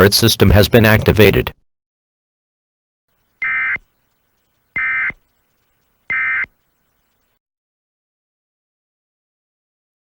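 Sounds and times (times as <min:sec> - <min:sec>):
digital data tone bursts: 0:03.4 - 0:07.2.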